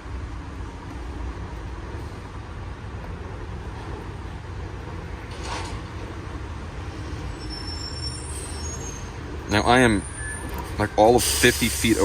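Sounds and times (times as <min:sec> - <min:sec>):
freeway traffic rumble: 0:00.0 - 0:12.0
short hiss: 0:11.2 - 0:12.0.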